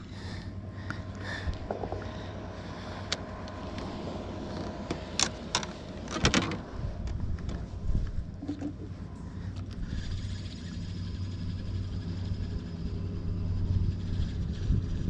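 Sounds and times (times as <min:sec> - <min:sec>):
boat motor humming: 0:00.0 - 0:15.0
sharp clicks and knocks: 0:04.6 - 0:07.6.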